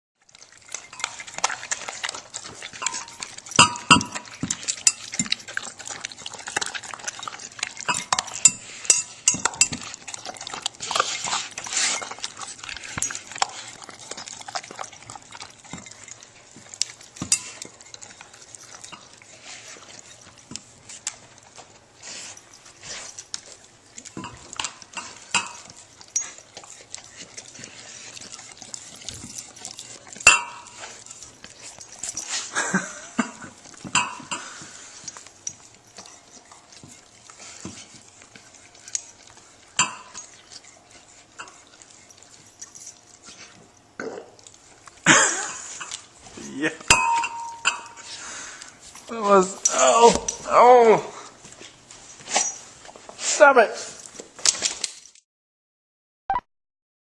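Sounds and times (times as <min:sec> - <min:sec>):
dog eating from a bowl: 0:00.2 - 0:55.2.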